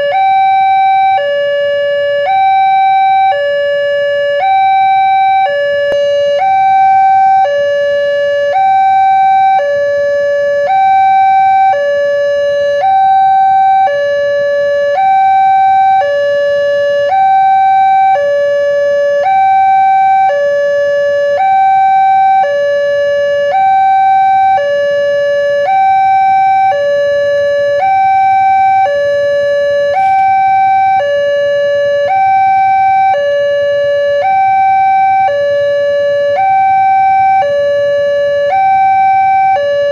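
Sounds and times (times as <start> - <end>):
two-tone crossing warning alarm: 0.0 - 39.9.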